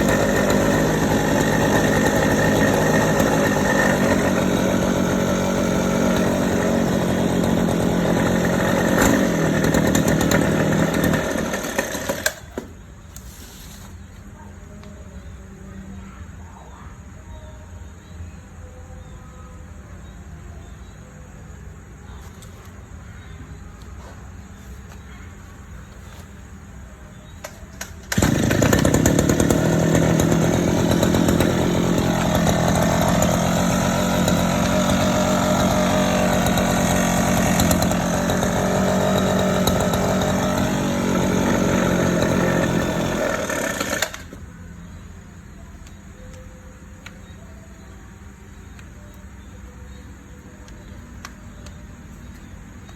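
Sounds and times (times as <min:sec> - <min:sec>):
chainsaw engine running: 0:00.0 - 0:12.7, 0:27.8 - 0:44.4.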